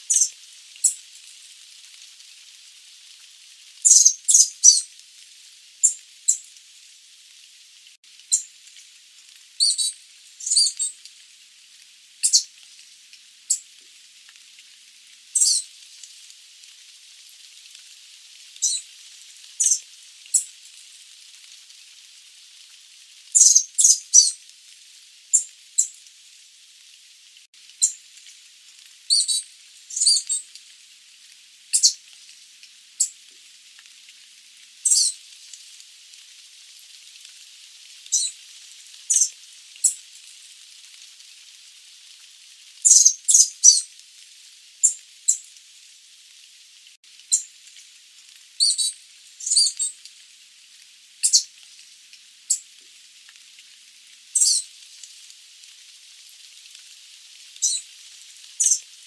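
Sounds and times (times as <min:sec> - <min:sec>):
birds giving high-pitched calls: 0:00.1 - 0:01.0, 0:03.9 - 0:04.9, 0:09.6 - 0:11.0, 0:12.2 - 0:12.5, 0:15.4 - 0:15.7, 0:18.6 - 0:18.8, 0:19.6 - 0:20.5, 0:23.4 - 0:24.4, 0:29.1 - 0:30.4, 0:31.8 - 0:32.0, 0:34.9 - 0:35.2, 0:38.1 - 0:38.3, 0:39.1 - 0:40.0, 0:42.9 - 0:43.8, 0:48.6 - 0:49.9, 0:51.2 - 0:51.5, 0:54.4 - 0:54.6, 0:57.6 - 0:57.8, 0:58.6 - 0:58.8.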